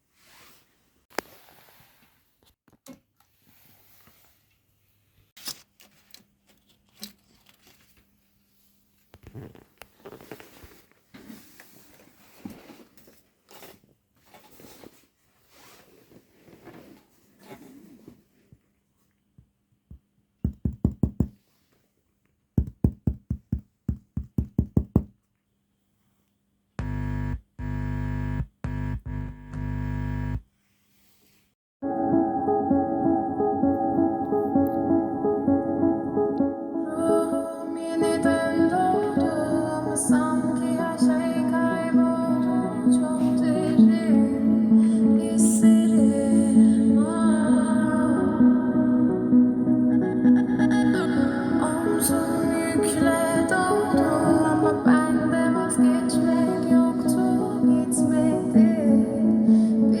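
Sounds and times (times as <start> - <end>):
rustling handling noises: 5.4 - 18.5
faint steady low hum: 26.2 - 30.4
loud sustained synth chords: 26.8 - 30.4
small clicks: 26.8 - 30.4.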